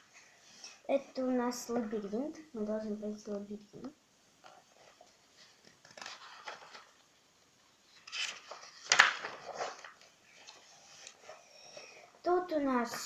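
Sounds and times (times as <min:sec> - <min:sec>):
book pages turning: 0:03.2 - 0:07.2, 0:07.9 - 0:12.2.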